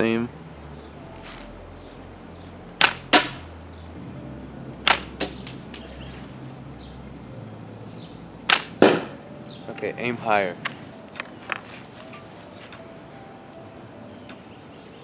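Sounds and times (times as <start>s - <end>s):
crossbow shots sharp cracks: 2.8s - 3.5s, 4.8s - 5.9s, 8.5s - 9.2s.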